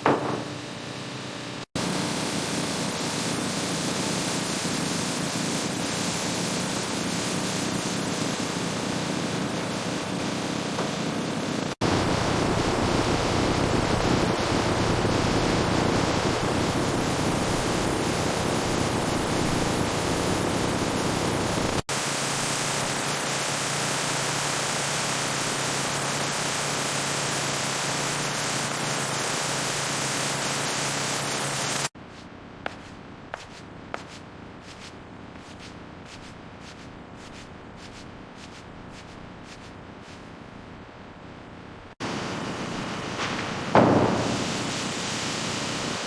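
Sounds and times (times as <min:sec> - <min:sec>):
dense machinery noise: 0:00.0 - 0:22.1, 0:42.0 - 0:46.0.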